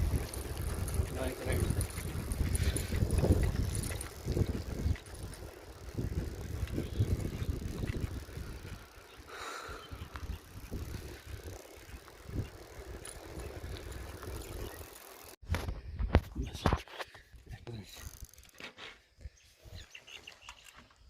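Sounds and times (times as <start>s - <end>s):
road rumble and wind noise: 0.0s - 16.7s.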